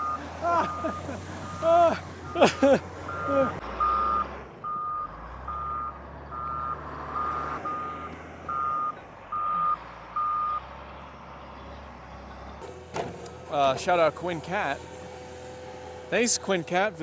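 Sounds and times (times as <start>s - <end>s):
backup alarm beeping: 0.0s - 1.7s, 3.1s - 10.6s
diesel engine rumble: 0.0s - 17.0s.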